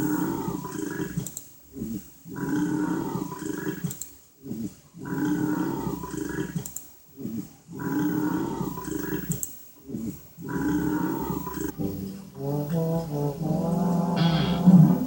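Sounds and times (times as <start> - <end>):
person burping loudly: 14.2 - 15.0.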